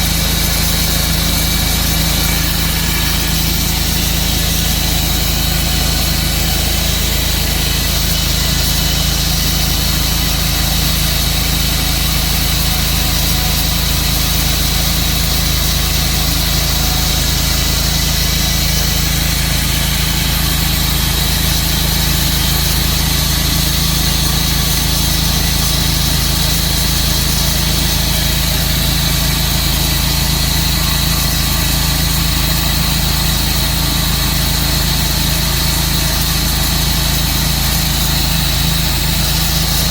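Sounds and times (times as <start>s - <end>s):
sawmill engine sawing wood: 0.0s - 39.9s.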